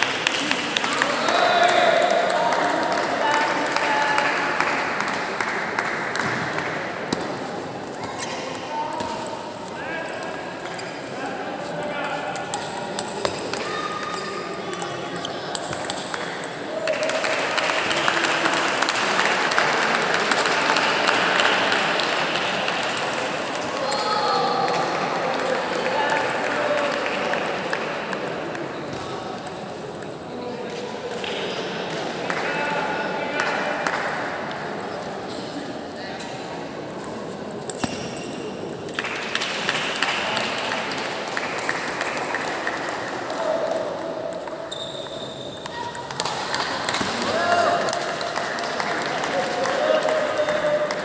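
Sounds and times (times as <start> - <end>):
spectators applauding: 0.0 - 6.9, 16.0 - 28.7, 38.9 - 44.1, 45.7 - 51.0.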